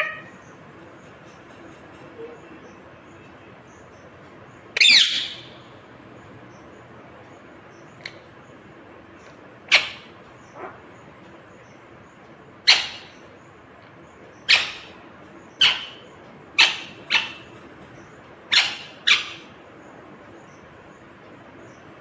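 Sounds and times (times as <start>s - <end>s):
parakeet squawks: 0.0s - 0.3s, 4.8s - 5.6s, 9.7s - 11.0s, 12.7s - 13.3s, 14.3s - 19.5s.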